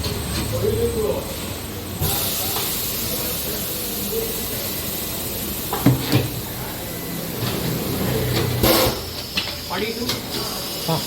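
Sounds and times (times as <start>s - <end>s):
compressed air hissing: 2.0s - 5.8s.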